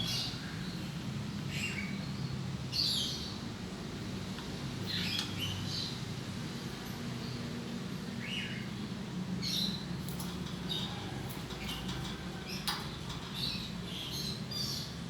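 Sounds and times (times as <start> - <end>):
steady low hum: 3.6 - 15.0.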